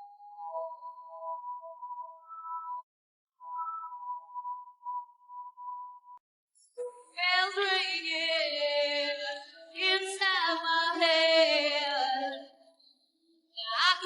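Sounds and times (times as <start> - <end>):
woman singing a cappella: 7.0 - 12.6, 13.6 - 14.0.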